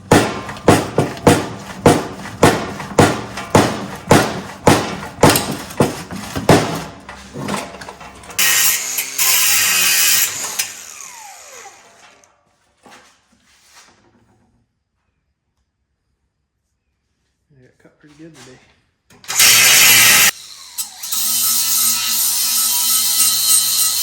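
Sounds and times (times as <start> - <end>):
pipe cutter metallic strokes: 8.4 - 10.8, 21.2 - 24.0.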